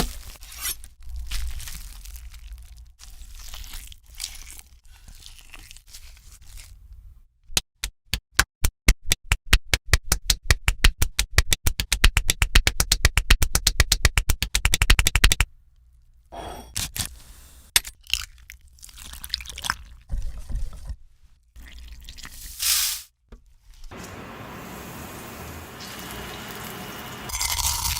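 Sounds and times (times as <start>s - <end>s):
soft scraping and crinkling: 0.1s - 7.1s, 23.5s - 24.3s.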